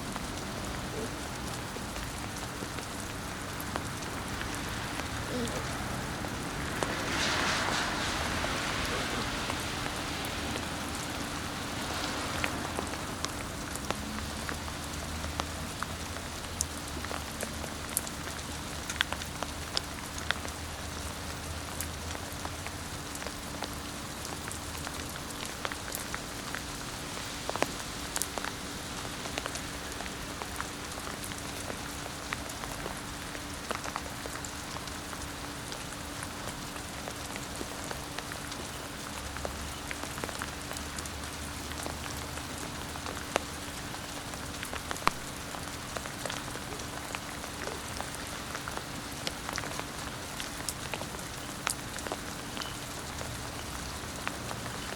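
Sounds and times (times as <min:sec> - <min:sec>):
rain-like pattering: 0:00.0 - 0:54.9.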